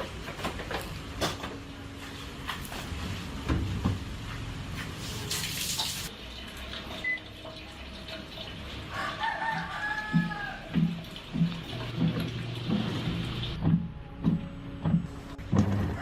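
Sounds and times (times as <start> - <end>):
rooster crowing: 8.9 - 10.8, 15.6 - 16.0.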